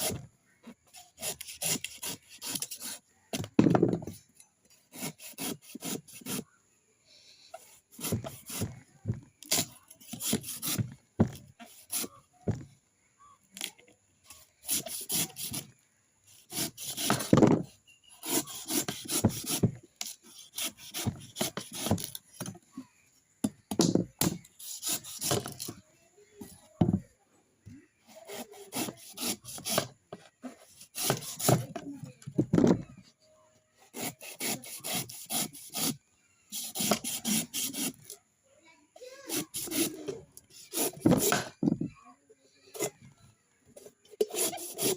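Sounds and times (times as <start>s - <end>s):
coconut being scraped: 0.0s - 3.1s, 4.9s - 6.5s, 7.6s - 8.8s, 9.4s - 12.6s, 14.6s - 15.7s, 16.3s - 17.3s, 18.1s - 22.2s, 24.3s - 25.7s, 28.1s - 31.8s, 33.8s - 38.1s, 39.0s - 41.6s, 43.8s - 44.9s.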